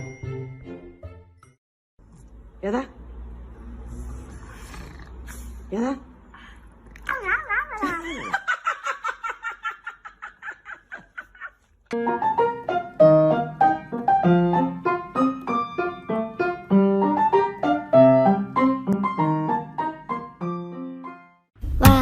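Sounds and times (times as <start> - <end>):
piano music: 0.0 - 1.6, 12.0 - 22.0.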